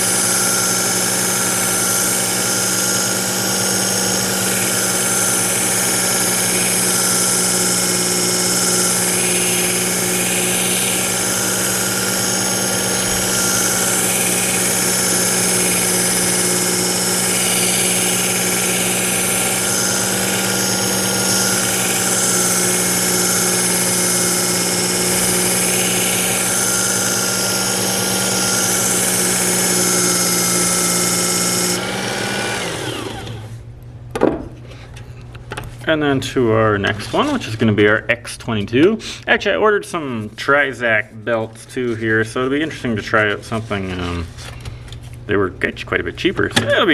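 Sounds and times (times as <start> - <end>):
electric knife sharpener running: 0.0 - 33.6
motor winding down: 0.0 - 33.6
knocks: 34.1 - 34.6.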